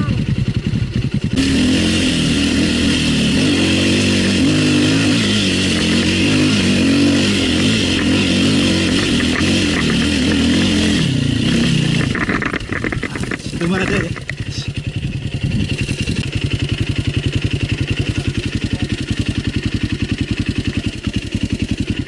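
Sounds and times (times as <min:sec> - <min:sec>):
dirt bike engine revving: 0:00.0 - 0:22.0.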